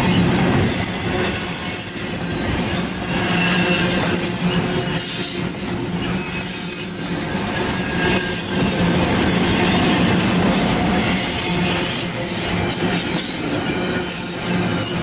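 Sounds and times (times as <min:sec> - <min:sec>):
high wheel squeal: 0:00.0 - 0:15.0
train wheels on rails: 0:00.0 - 0:15.0.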